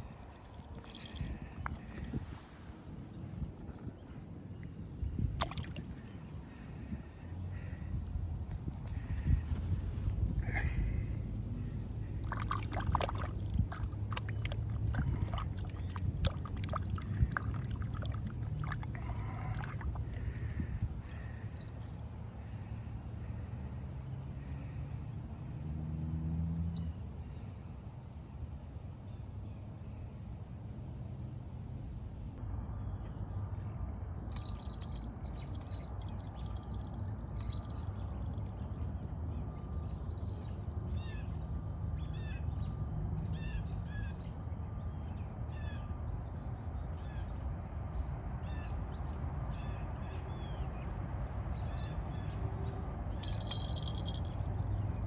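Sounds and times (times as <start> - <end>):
low steady rumble: 0.0 - 23.8
insect drone: 0.0 - 55.0.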